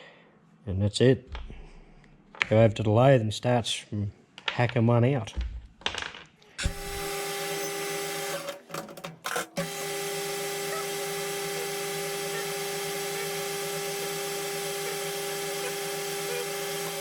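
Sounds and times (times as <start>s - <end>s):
metal lathe motor hum and whine: 6.6s - 8.5s, 9.6s - 17.0s.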